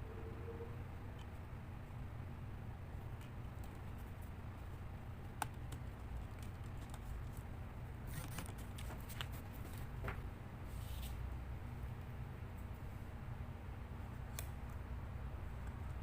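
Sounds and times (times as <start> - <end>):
steady low hum: 0.0 - 8.1.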